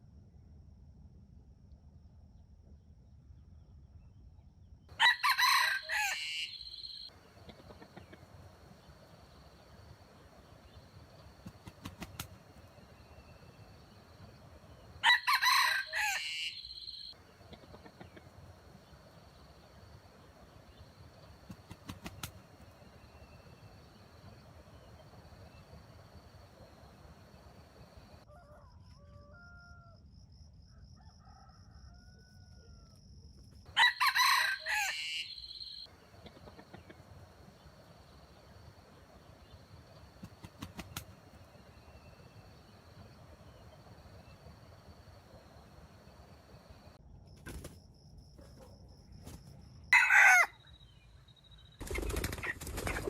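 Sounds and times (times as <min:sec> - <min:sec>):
rooster crowing: 0:04.9 - 0:07.1, 0:15.0 - 0:17.2, 0:28.2 - 0:30.0, 0:30.8 - 0:32.9, 0:33.7 - 0:35.9, 0:49.9 - 0:50.7.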